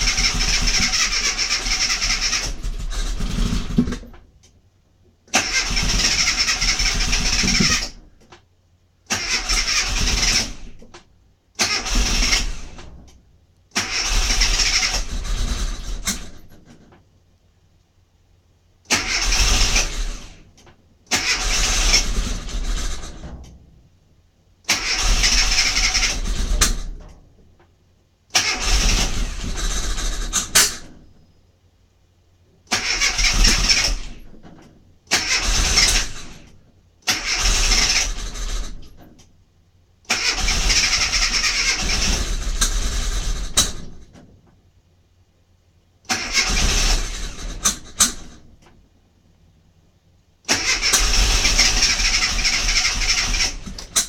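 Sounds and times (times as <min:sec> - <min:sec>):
car engine cranking on starter: 0:00.0 - 0:04.3, 0:05.3 - 0:08.3, 0:09.1 - 0:11.0, 0:11.6 - 0:16.8, 0:18.9 - 0:23.4, 0:24.7 - 0:27.2, 0:28.3 - 0:31.1, 0:32.7 - 0:39.3, 0:40.1 - 0:44.2, 0:46.1 - 0:48.5, 0:50.5 - 0:54.0.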